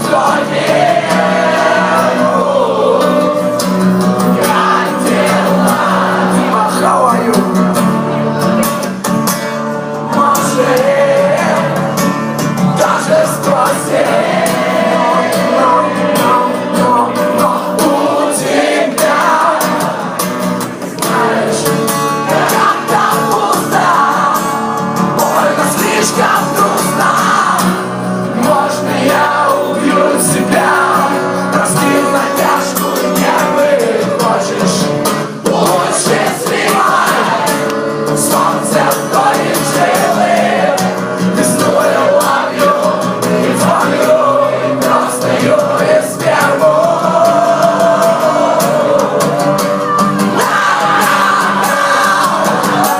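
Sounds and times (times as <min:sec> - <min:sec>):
live rock band with vocals: 0:00.0 - 0:52.9.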